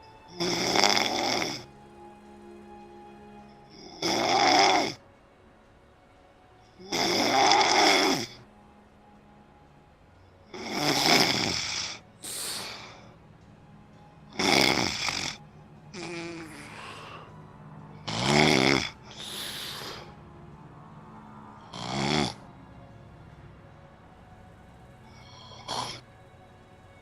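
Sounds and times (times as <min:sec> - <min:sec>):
person snoring: 0:00.4 - 0:01.7, 0:03.8 - 0:05.0, 0:06.8 - 0:08.4, 0:10.5 - 0:13.0, 0:14.4 - 0:15.4, 0:16.0 - 0:17.3, 0:18.0 - 0:20.1, 0:21.7 - 0:22.4, 0:25.2 - 0:26.0
soft breath: 0:11.7 - 0:13.2, 0:16.3 - 0:17.5, 0:19.0 - 0:20.2.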